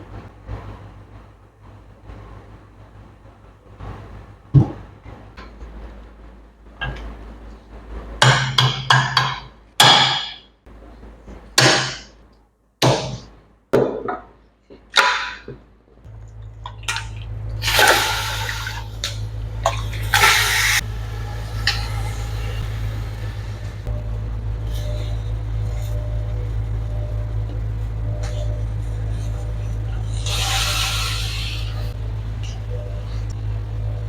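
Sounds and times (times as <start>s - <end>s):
low hum with rushing water: 16.1s - 34.0s.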